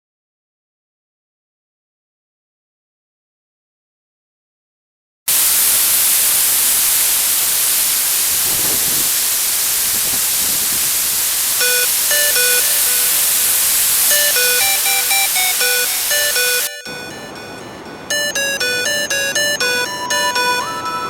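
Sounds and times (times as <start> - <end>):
loud steady hiss: 5.3 - 20.7
music box melody: 11.6 - 21.0.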